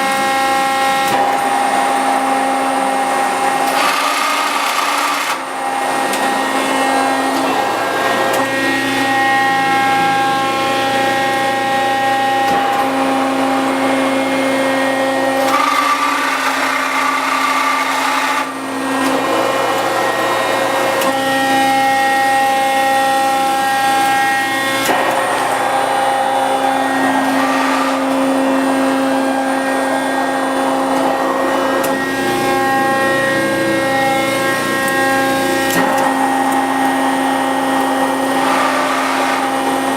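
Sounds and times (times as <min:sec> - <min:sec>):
hydraulic pump whine: 0:00.0 - 0:39.9.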